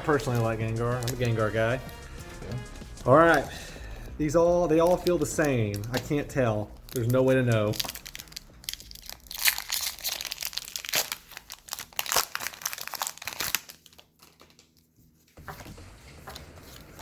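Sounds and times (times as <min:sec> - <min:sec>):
wrapper being torn open: 0:00.0 - 0:02.0, 0:04.7 - 0:14.9
foil wrapper crinkling: 0:00.0 - 0:02.5, 0:03.2 - 0:15.7.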